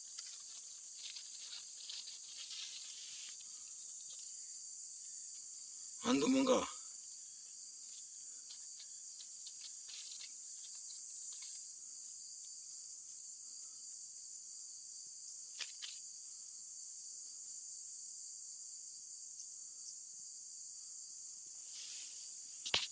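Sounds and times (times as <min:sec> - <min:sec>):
crickets chirring: 0:00.0 - 0:22.9
faint ticks: 0:07.9 - 0:11.7.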